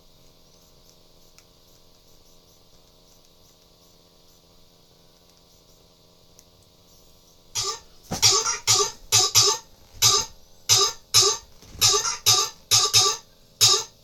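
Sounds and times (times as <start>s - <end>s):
rap beat with bass thumps: 7.6s - 14.0s.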